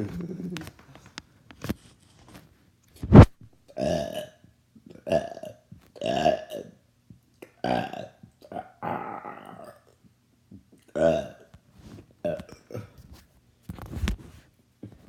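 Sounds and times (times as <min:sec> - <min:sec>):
person burping: 0:03.8 - 0:04.3, 0:04.9 - 0:06.8, 0:07.4 - 0:10.0, 0:10.9 - 0:11.5, 0:12.2 - 0:13.0.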